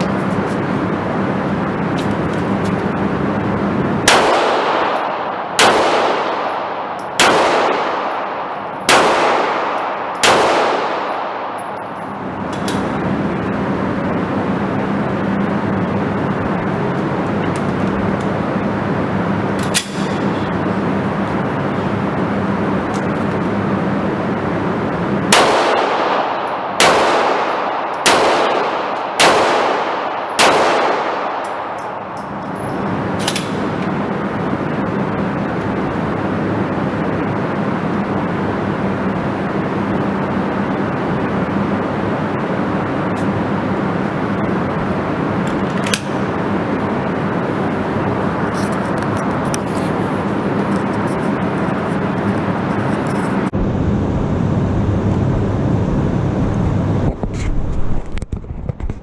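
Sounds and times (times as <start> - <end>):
background hum and hiss: 0.0 - 59.0
handgun shots with echo: 4.1 - 13.0, 19.6 - 20.8, 25.3 - 34.0, 45.4 - 46.6.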